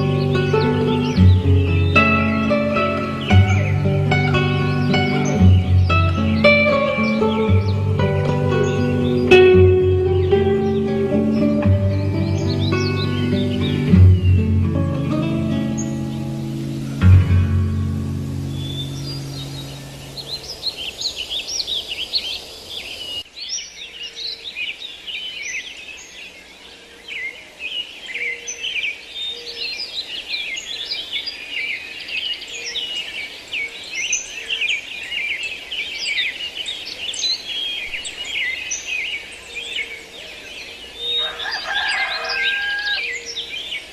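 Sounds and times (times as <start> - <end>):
lower louder bird call: 0.0 - 21.4, 37.6 - 43.9
small birds chirping and twittering: 0.0 - 43.9.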